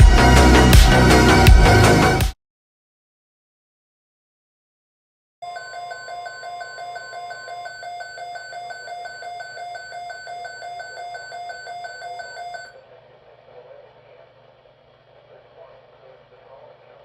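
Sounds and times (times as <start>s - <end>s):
high electronic alarm beeps: 5.4s - 12.7s
low radio hiss: 12.8s - 17.0s.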